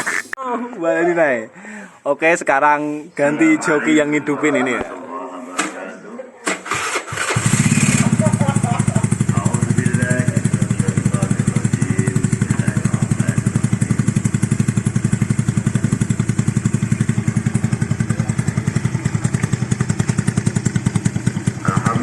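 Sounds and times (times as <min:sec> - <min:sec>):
scooter engine idling: 0:06.7 - 0:22.0.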